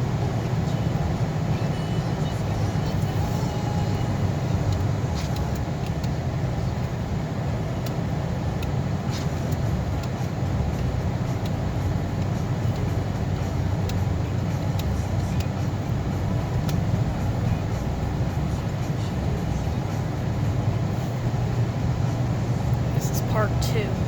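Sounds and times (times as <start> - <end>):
car road and engine rumble: 0.0 - 24.0
faint ticks: 4.7 - 6.2, 7.8 - 23.0.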